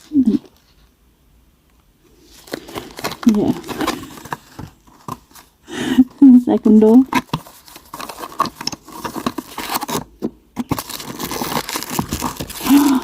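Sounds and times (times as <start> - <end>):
toy packaging being opened: 2.3 - 5.5, 6.1 - 13.0.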